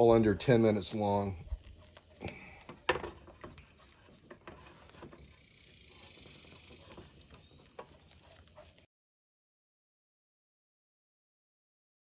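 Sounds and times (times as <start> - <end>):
utensil scraping in a pan: 0.0 - 8.8.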